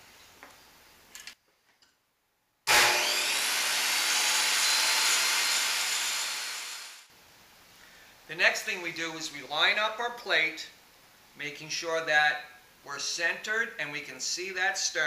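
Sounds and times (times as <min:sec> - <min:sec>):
power saw cutting metal: 0:02.7 - 0:07.0.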